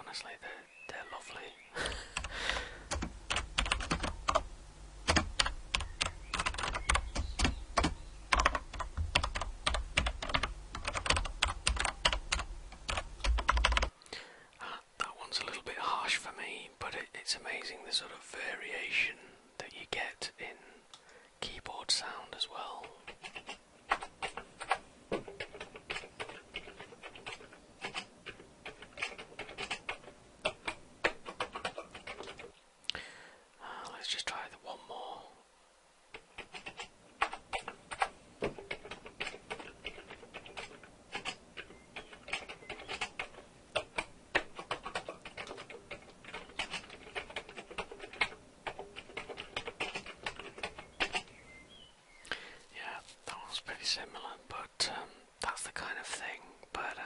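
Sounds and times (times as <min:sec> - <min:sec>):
steady low hum: 0:00.0 - 0:57.0
computer keyboard typing: 0:01.9 - 0:13.9, 0:22.8 - 0:32.5, 0:36.1 - 0:51.3.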